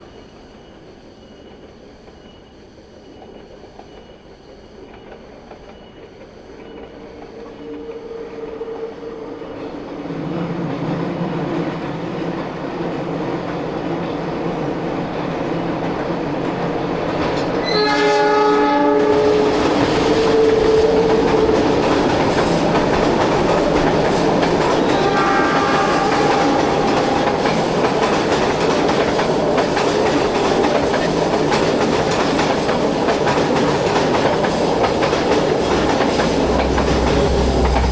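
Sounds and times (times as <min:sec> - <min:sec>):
train engine humming: 0:00.0 - 0:37.9
locomotive horn blast: 0:17.6 - 0:28.3, 0:35.6 - 0:37.9.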